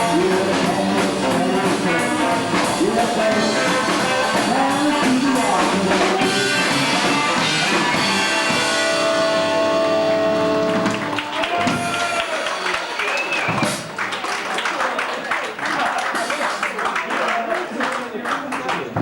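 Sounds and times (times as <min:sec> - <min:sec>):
live rock band playing: 0:00.0 - 0:14.2.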